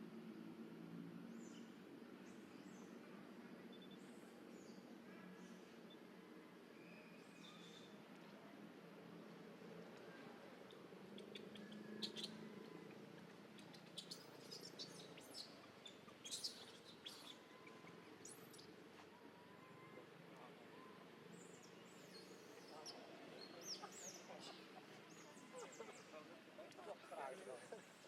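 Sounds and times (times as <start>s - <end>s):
faint steady low hum: 0.0s - 28.0s
small birds chirping: 6.8s - 8.4s, 9.9s - 28.0s.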